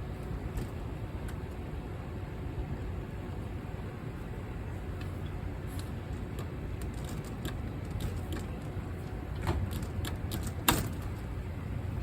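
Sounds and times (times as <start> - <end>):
steady low rumble: 0.0 - 12.0.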